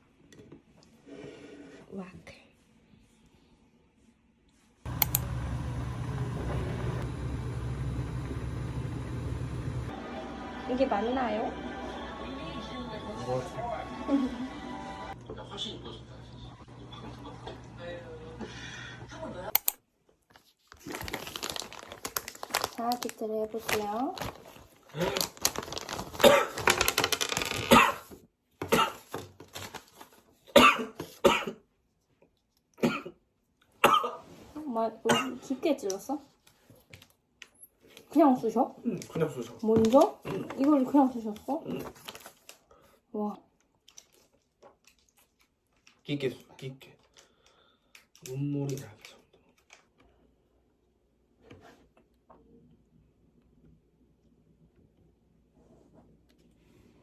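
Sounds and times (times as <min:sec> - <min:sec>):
sharp clicks: 0:04.9 - 0:05.3, 0:19.5 - 0:19.8
low machine hum: 0:04.9 - 0:10.0
person coughing: 0:26.2 - 0:26.6, 0:27.6 - 0:29.1, 0:30.5 - 0:31.6, 0:32.8 - 0:33.2, 0:33.8 - 0:34.2, 0:35.1 - 0:35.4.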